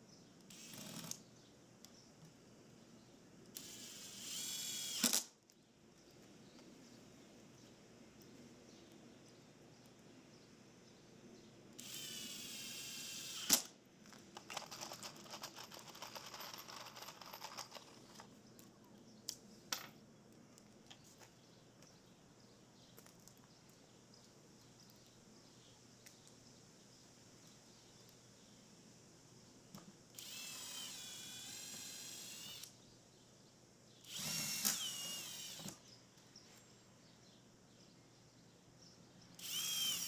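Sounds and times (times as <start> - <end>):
power drill running: 0.5 - 1.2, 3.6 - 5.2, 11.8 - 13.7, 30.2 - 32.7, 34.0 - 35.8, 39.4 - 40.0
tools clattering and clicking: 14.1 - 18.4.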